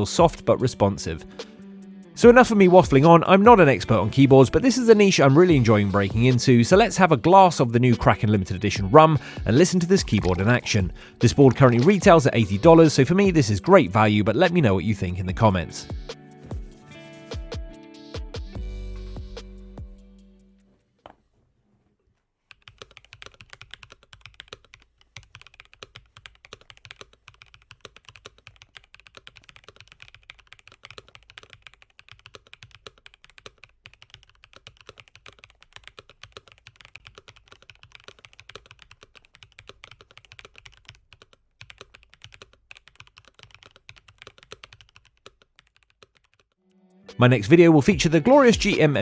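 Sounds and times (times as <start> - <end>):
mechanical keyboard typing: 9.6 - 12.0, 22.5 - 46.6.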